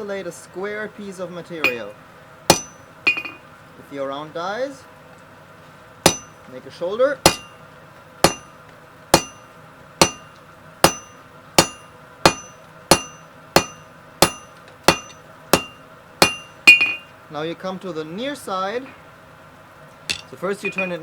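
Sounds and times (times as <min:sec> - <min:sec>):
hammer striking metal on anvil: 0:01.6 - 0:01.9, 0:02.5 - 0:03.4, 0:06.1 - 0:06.4, 0:07.2 - 0:07.6, 0:08.2 - 0:17.1, 0:20.1 - 0:21.0.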